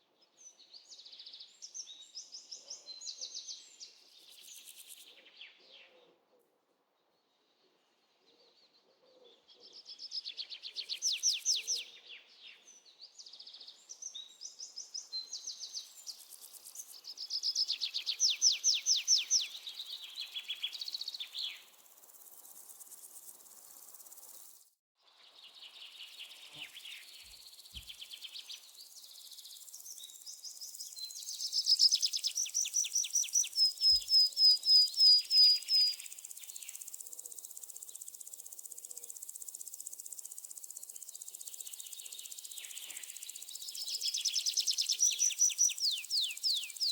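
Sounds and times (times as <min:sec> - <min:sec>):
birds singing in fast trills: 0:10.2 - 0:12.0, 0:14.0 - 0:21.8, 0:25.9 - 0:46.9
high insect buzz: 0:21.5 - 0:24.7, 0:35.6 - 0:46.9.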